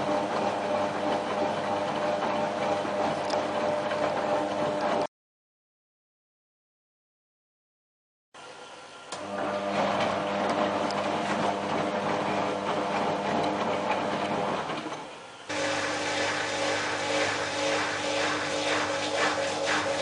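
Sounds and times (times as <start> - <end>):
washing machine motor hum: 0.0 - 5.1, 8.4 - 20.0
water noise: 15.5 - 20.0.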